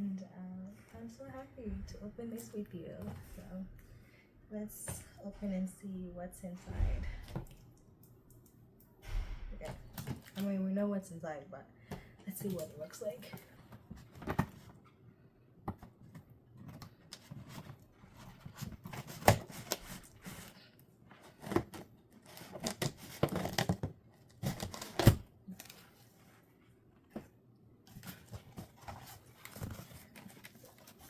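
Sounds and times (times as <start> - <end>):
cardboard rustling and tearing: 16.1 - 26.5, 27.8 - 31.0.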